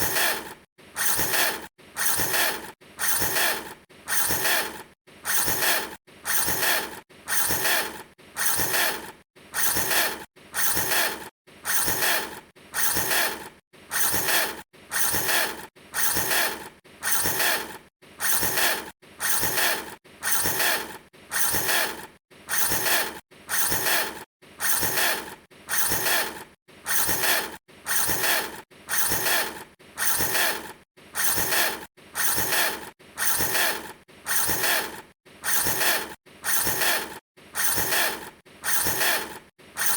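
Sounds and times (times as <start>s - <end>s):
mechanical rattling and clicking: 0.0s - 39.9s.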